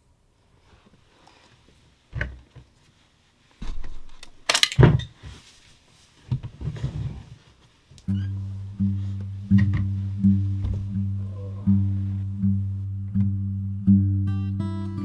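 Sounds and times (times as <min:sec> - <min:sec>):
knocks and rustles of handling: 0:00.8 - 0:12.8.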